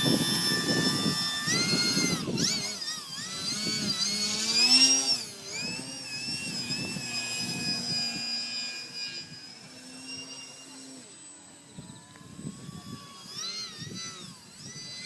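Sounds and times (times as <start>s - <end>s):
wind buffeting microphone: 0.0s - 4.4s
model airplane motor whining: 0.0s - 15.0s.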